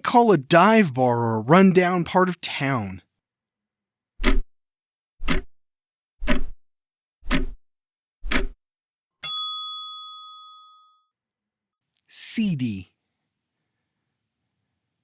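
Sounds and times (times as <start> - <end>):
clock ticks: 4.2 - 4.5, 5.2 - 5.5, 6.2 - 6.6, 7.2 - 7.6, 8.2 - 8.6
bell ding: 9.2 - 11.1.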